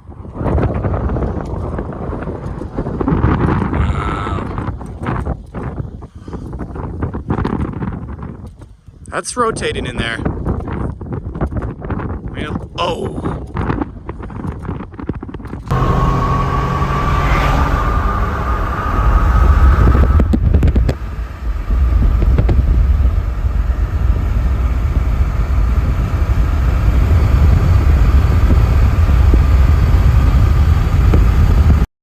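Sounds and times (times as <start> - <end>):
car road and engine rumble: 15.4 - 31.9
faint rising whine: 15.7 - 31.9.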